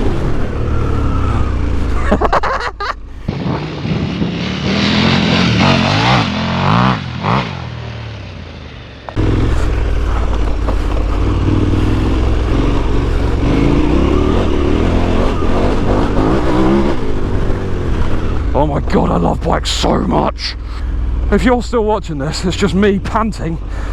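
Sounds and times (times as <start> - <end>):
motorcycle engine revving: 0.0 - 23.9
road noise: 0.0 - 23.9
wind noise: 3.1 - 6.3.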